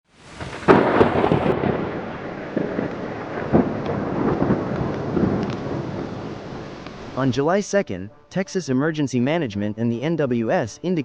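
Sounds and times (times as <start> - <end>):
heavy rain: 0.0 - 7.4
thunder: 0.3 - 7.2
sharp thunder cracks: 0.3 - 7.3.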